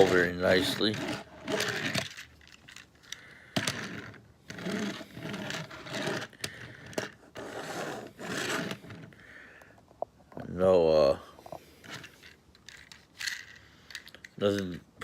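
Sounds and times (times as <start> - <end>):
plastic toy wheels rolling: 0.0 - 9.2, 11.8 - 14.9
toy clicks: 11.9 - 14.8.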